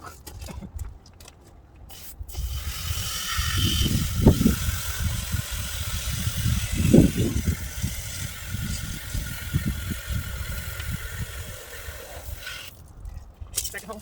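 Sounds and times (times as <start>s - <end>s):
steady hiss: 1.9s - 12.8s
wind buffeting microphone: 1.9s - 13.6s.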